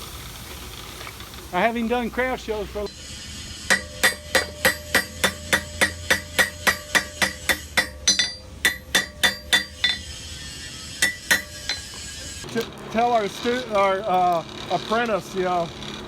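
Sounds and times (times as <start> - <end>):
hammer striking metal on anvil: 3.7 - 10.1, 11.0 - 12.0.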